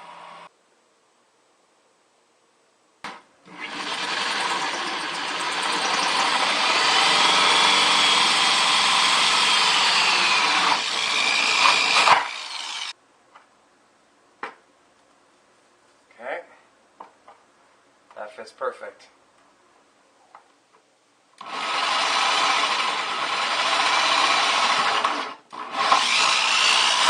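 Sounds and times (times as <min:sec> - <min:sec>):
power drill whining through plastic: 0:03.5 - 0:12.9, 0:21.4 - 0:27.0.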